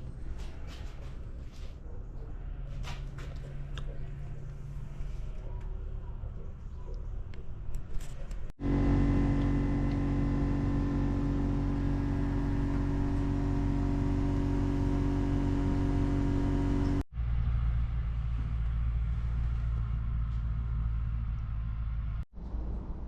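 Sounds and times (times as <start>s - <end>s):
low steady rumble: 8.4s - 23.0s
car engine running: 8.6s - 22.2s.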